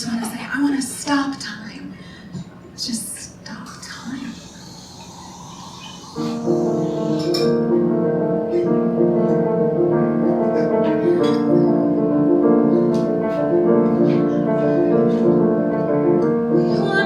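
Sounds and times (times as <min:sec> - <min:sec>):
solo piano chords: 0:06.0 - 0:17.0.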